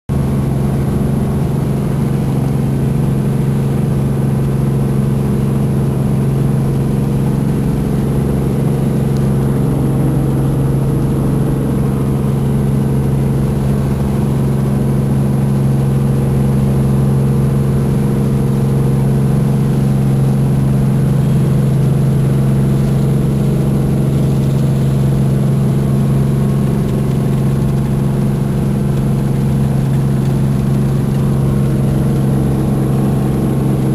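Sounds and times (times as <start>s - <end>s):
helicopter drone: 0.1s - 33.9s.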